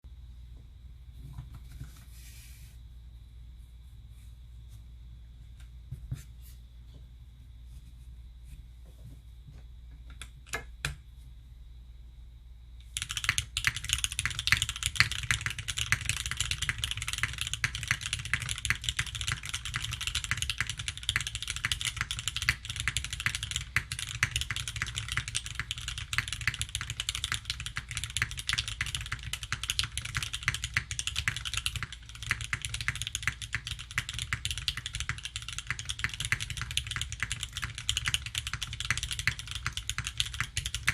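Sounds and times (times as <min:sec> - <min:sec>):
fast mechanical keyboard typing: 0:12.9 - 0:40.9.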